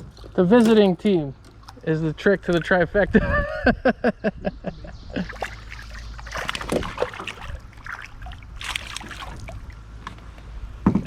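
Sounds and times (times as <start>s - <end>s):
water splashing against boat: 0.0s - 3.4s, 4.9s - 10.3s
low hum: 1.2s - 10.8s.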